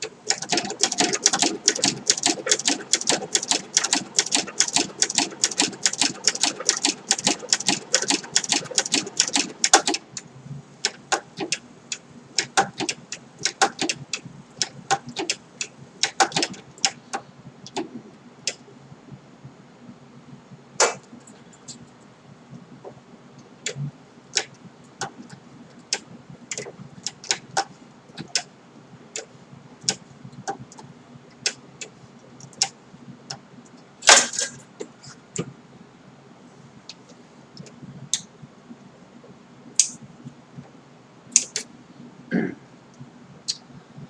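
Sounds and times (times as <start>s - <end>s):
sewing machine stitching leather: 0.3s - 10.0s.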